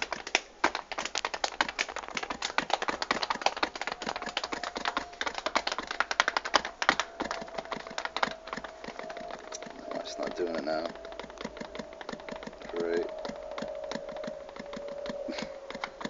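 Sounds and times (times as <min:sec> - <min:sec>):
rapid tapping clicks: 0:00.0 - 0:16.0
faint steady tone: 0:06.6 - 0:16.0.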